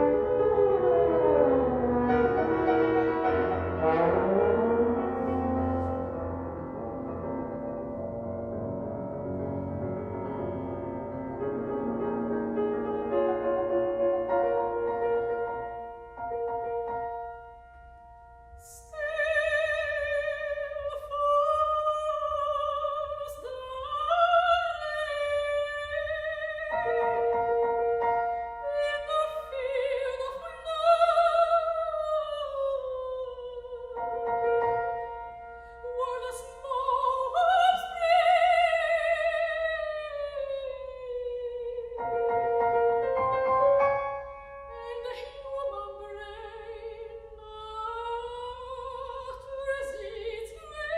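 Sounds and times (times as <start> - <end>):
piano chords: 0.0 - 47.4
soprano singing with vibrato: 18.6 - 43.4, 44.6 - 50.9.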